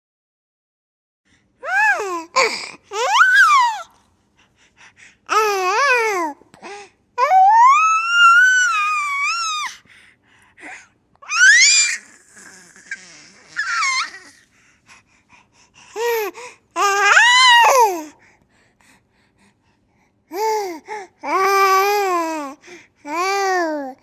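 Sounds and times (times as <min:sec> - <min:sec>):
baby squealing with laughter: 0:03.0 - 0:03.8, 0:07.3 - 0:09.7, 0:11.2 - 0:14.4.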